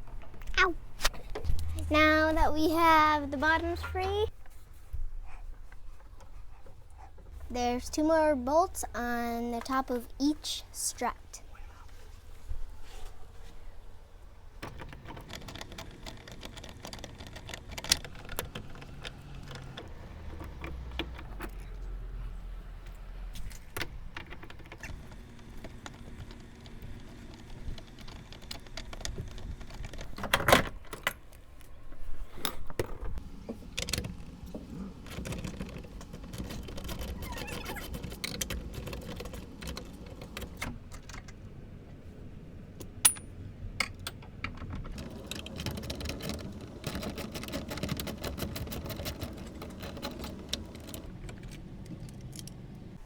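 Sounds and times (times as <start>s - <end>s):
small metal parts clinking: 42.8s - 52.8s.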